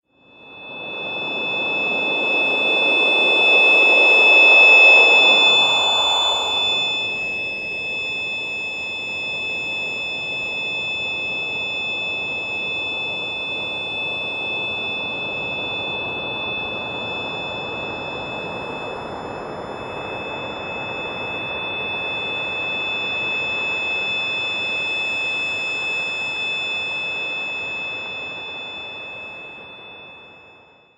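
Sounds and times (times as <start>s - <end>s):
high electronic tones: 0.6s - 18.6s
rushing hiss-like drone: 5.0s - 7.2s.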